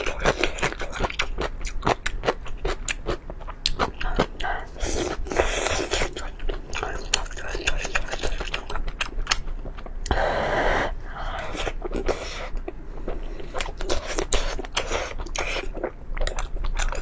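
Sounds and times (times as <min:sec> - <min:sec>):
mouth clicks and crackles: 0:00.0 - 0:10.2
wet chewing: 0:00.0 - 0:10.2, 0:11.1 - 0:17.0.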